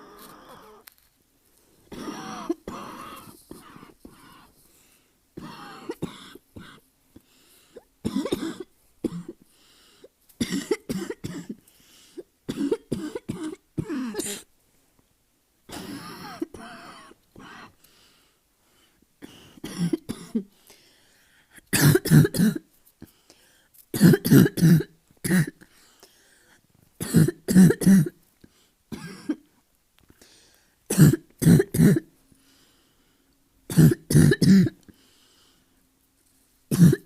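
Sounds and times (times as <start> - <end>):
person barking cough: 1.9 - 4.5, 5.4 - 6.8, 10.4 - 11.6, 15.7 - 17.7, 19.6 - 20.5, 21.8 - 22.6, 24.0 - 25.6, 27.0 - 28.1, 28.9 - 29.4, 30.9 - 32.1, 33.7 - 34.8, 36.7 - 37.0.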